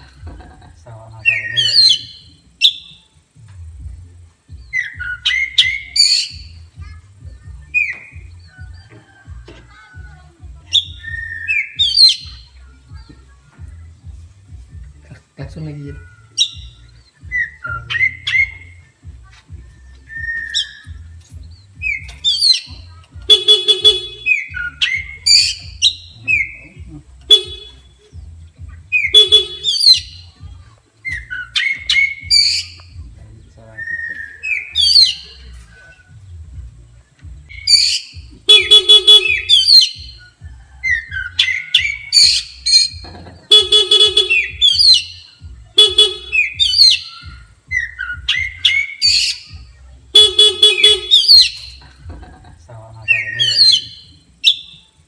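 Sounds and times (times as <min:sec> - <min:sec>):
bird singing whistles and chirps: 0:00.9 - 0:10.1, 0:10.7 - 0:52.1, 0:52.9 - 0:55.0
harsh buzzy bird honk: 0:21.8 - 0:28.0, 0:28.6 - 0:30.4, 0:37.5 - 0:52.2, 0:53.0 - 0:54.7.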